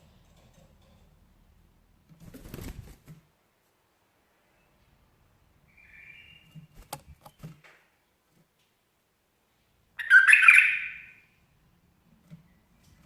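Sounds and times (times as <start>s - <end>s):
bird song burst: 5.7s - 7.5s, 10.0s - 11.3s
bulbul calling: 10.0s - 11.2s.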